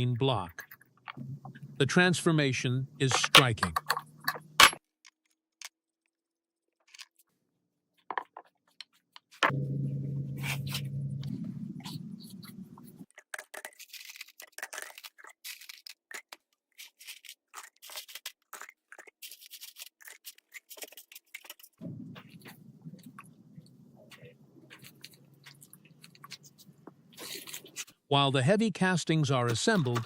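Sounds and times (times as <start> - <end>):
low steady hum: 1.2 - 4.6, 9.4 - 13.0, 21.8 - 27.6
sharp clicks and scrapes: 10.6 - 28.0.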